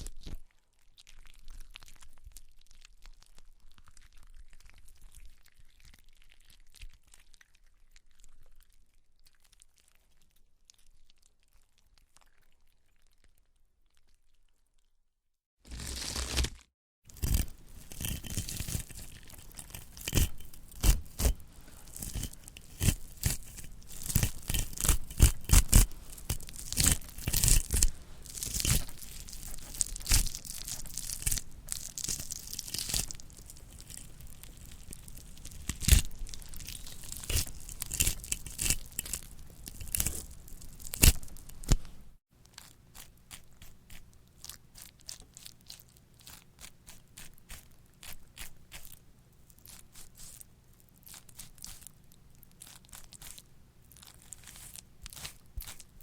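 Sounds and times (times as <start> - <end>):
flesh tearing and crunching: 15.7 - 56.0.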